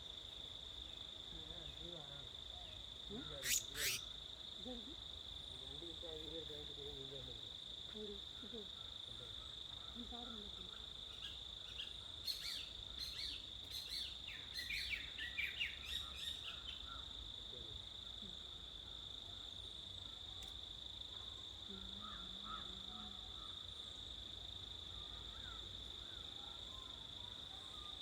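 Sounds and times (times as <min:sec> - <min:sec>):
high-pitched insect drone: 0:03.2 - 0:04.2
bird twittering: 0:03.3 - 0:04.0.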